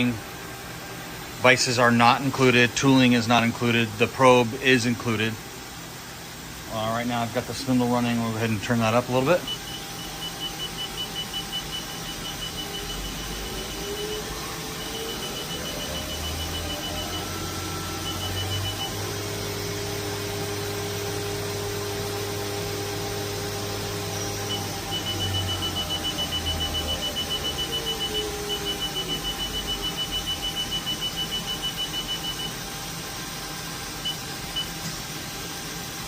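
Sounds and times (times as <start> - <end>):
machine spindle hum and whine: 0.0 - 36.0
rapid high electronic beeps: 9.3 - 19.2, 24.2 - 32.6.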